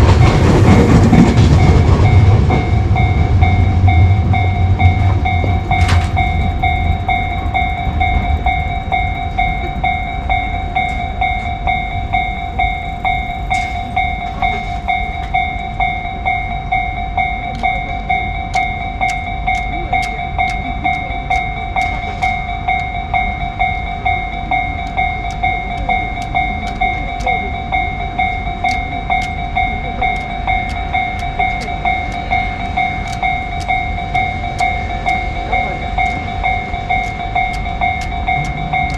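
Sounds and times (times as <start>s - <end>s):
train rumbling past: 0.0s - 38.9s
level crossing bell ringing: 0.1s - 38.9s
sharp clicks: 28.6s - 35.3s.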